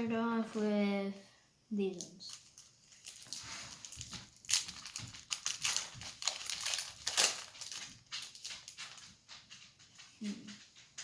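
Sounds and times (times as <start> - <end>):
crinkly wrapper tearing: 2.0 - 9.0.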